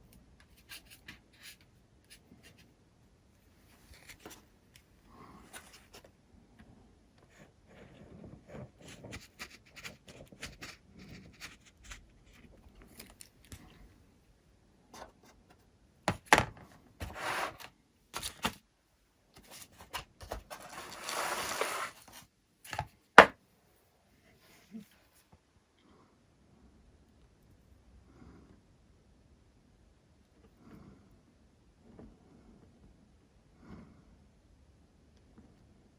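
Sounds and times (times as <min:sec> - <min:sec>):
scraping and rubbing: 0:17.0 - 0:18.6, 0:19.4 - 0:23.4.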